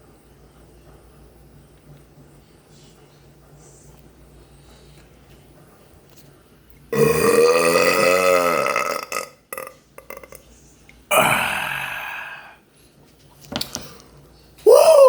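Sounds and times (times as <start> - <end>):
man burping loudly: 7.0 - 10.4, 11.1 - 12.6.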